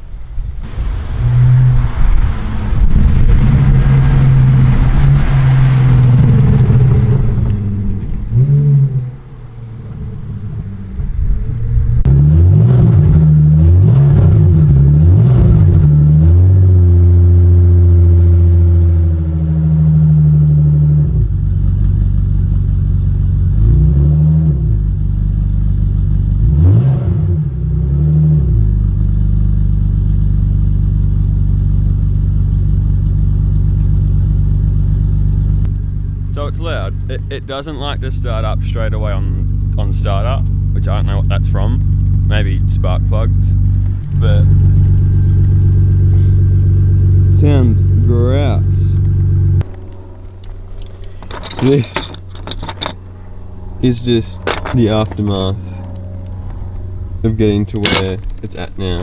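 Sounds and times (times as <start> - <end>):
loud car engine revving: 0.6 - 52.2, 52.9 - 59.0.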